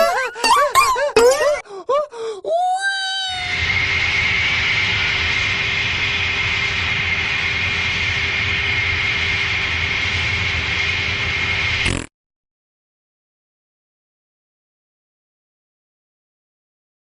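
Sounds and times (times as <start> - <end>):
constant high whine: 3.2 - 12.0
machine rushing noise: 3.4 - 12.0.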